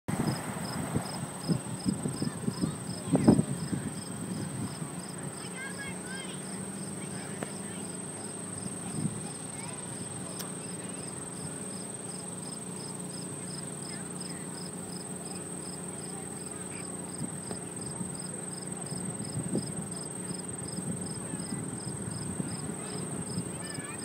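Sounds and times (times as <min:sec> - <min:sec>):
crickets chirping: 0:00.1 - 0:24.0
steady low hum: 0:00.1 - 0:24.0
high-pitched insect trill: 0:06.3 - 0:24.0.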